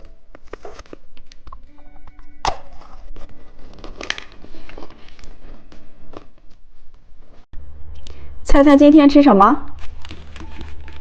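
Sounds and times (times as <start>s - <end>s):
plastic wrapper crinkling: 9.8s - 11.0s.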